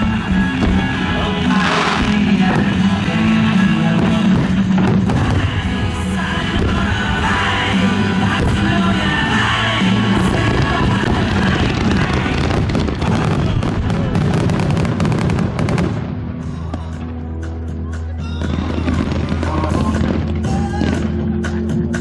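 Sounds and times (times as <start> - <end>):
firework bangs: 0.0 - 16.2
loud music with singing: 0.0 - 22.0.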